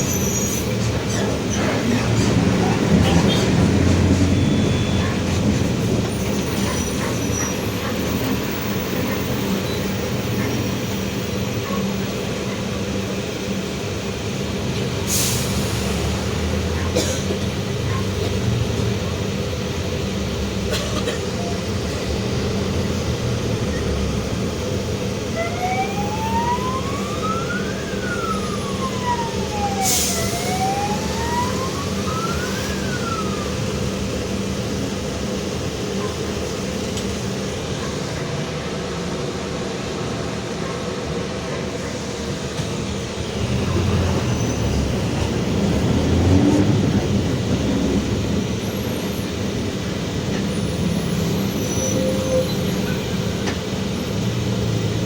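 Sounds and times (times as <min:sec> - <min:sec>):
bus engine drone: 0:00.0 - 0:55.0
siren wailing: 0:02.6 - 0:05.8, 0:25.3 - 0:34.2.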